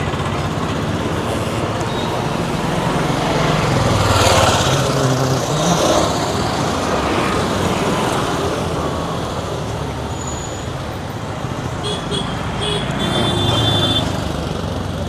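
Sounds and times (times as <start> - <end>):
steady traffic noise: 0.0 - 15.0
vehicle engine running close: 0.0 - 15.0.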